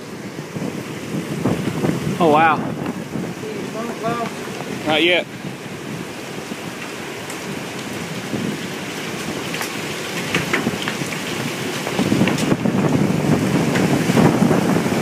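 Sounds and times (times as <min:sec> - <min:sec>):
wind rushing: 0:00.0 - 0:06.8, 0:12.0 - 0:15.0
heavy rain and hail: 0:00.0 - 0:15.0
hailstones ticking: 0:01.5 - 0:15.0.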